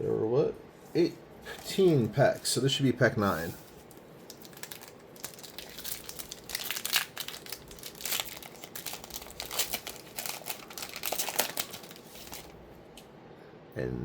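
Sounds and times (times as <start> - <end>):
plastic wrapper tearing and crinkling: 3.7 - 12.6.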